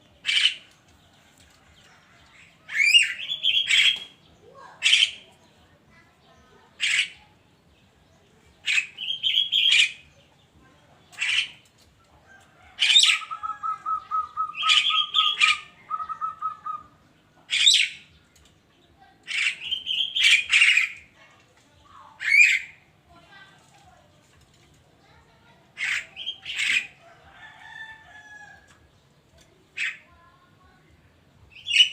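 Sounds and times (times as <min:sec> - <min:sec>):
bird trilling: 0:02.7 - 0:04.2, 0:08.6 - 0:10.0, 0:12.8 - 0:18.1, 0:19.3 - 0:21.0, 0:22.2 - 0:22.8, 0:31.5 - 0:31.9
myna harsh scratchy calls: 0:19.2 - 0:21.1, 0:22.2 - 0:22.8, 0:25.8 - 0:28.1.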